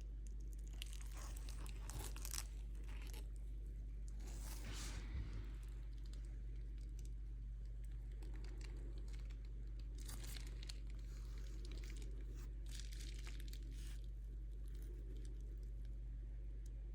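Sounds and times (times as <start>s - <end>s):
low electrical hum: 0.0s - 16.9s
crinkling rustling handling noise: 0.4s - 15.9s.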